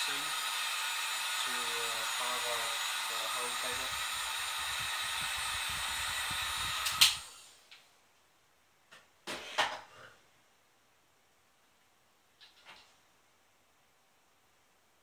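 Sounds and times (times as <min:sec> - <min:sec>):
heat gun whirring hiss: 0:00.0 - 0:07.7.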